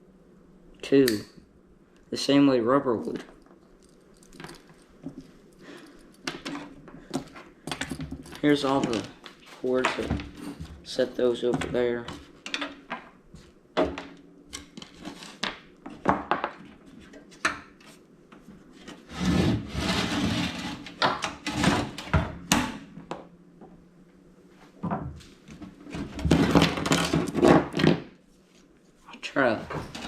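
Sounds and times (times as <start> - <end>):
scraping and rubbing: 14.6 - 15.5, 18.7 - 22.0.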